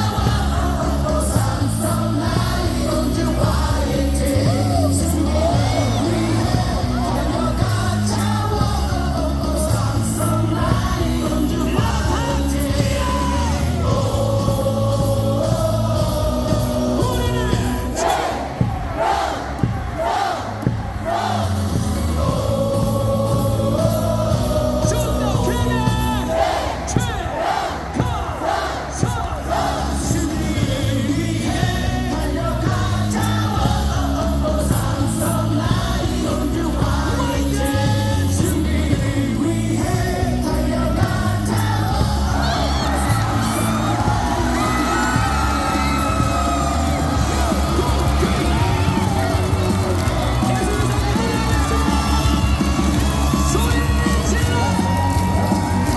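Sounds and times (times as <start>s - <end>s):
cheer song with heavy beat: 0.0s - 55.9s
crowd singing and yelling: 0.0s - 55.9s
loud amplified music: 0.0s - 55.9s.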